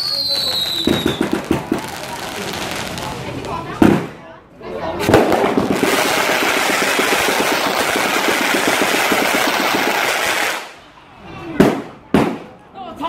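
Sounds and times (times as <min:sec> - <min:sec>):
bottle rockets launching crackling: 0:00.0 - 0:04.2, 0:05.0 - 0:10.8.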